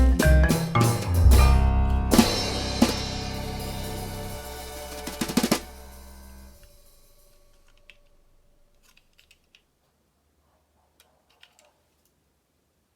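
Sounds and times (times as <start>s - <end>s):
background music with drums: 0.0s - 6.9s.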